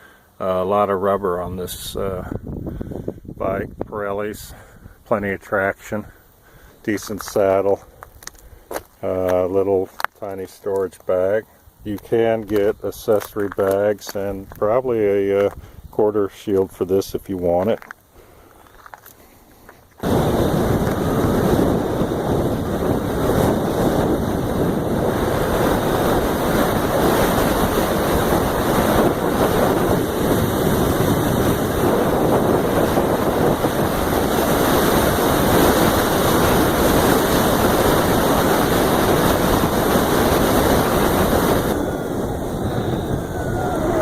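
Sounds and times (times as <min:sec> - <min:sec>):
wind buffeting microphone: 0:01.4 - 0:05.0, 0:11.8 - 0:16.2, 0:20.0 - 0:44.0.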